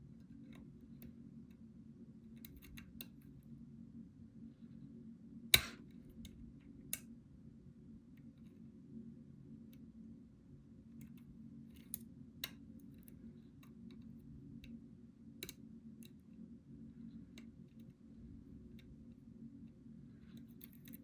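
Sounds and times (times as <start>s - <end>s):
low steady hum: 0.0s - 21.0s
lock pick metallic clicks: 5.6s - 6.4s.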